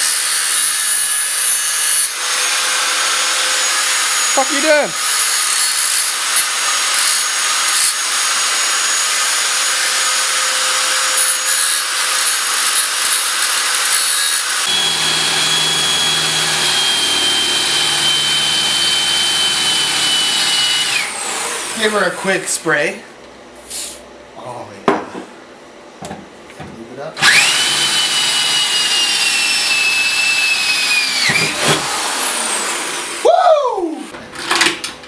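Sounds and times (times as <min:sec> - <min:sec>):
angle grinder grinding metal: 0:00.0 - 0:22.0, 0:27.2 - 0:33.2.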